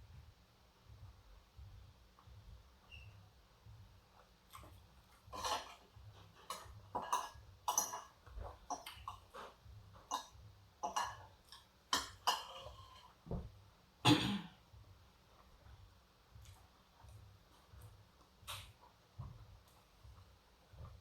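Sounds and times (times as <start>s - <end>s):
mouth smacks while eating: 4.5s - 5.8s.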